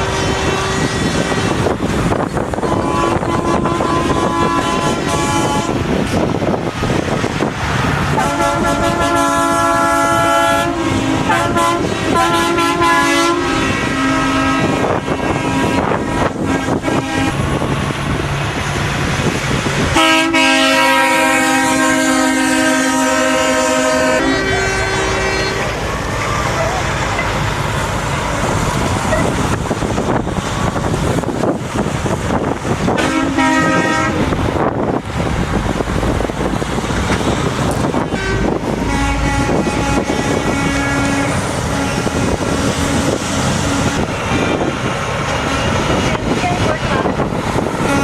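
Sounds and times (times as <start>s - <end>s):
truck air horn blasts: 0.0s - 1.7s, 2.6s - 6.0s, 8.1s - 17.6s, 19.9s - 26.8s, 32.9s - 34.4s, 37.9s - 44.8s, 47.8s - 48.0s
truck engines rumbling: 0.0s - 48.0s.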